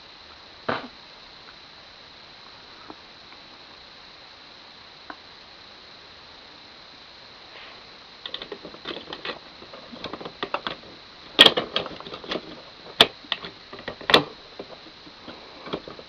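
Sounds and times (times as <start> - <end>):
light clicks and knocks: 8.2 - 16.0.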